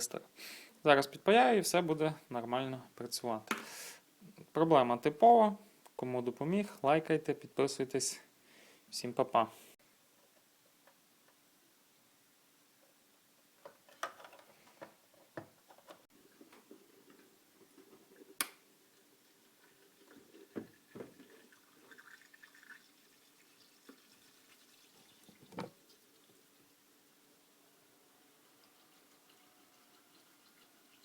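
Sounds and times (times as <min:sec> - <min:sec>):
water drips and gurgles: 0:17.1 - 0:26.8, 0:28.4 - 0:31.0.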